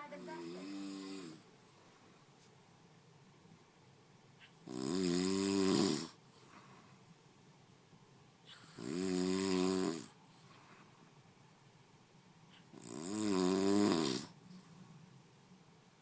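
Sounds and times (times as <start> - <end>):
quiet breathing: 0.0 - 2.4, 6.0 - 7.3, 8.4 - 8.9, 10.0 - 11.4, 14.2 - 15.4
man snoring: 0.1 - 1.4, 4.7 - 6.2, 8.6 - 10.2, 12.8 - 14.4.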